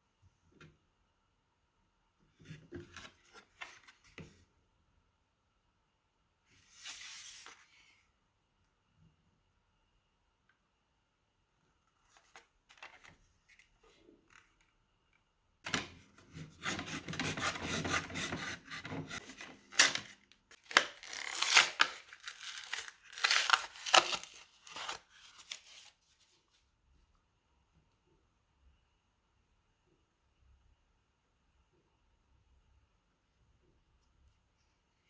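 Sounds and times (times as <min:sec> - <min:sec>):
packaging rustling and scraping: 0:16.7 - 0:26.4.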